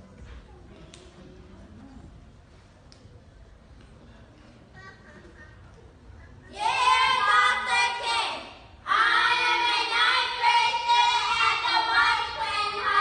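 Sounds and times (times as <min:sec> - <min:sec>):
children singing: 0:06.6 - 0:13.0.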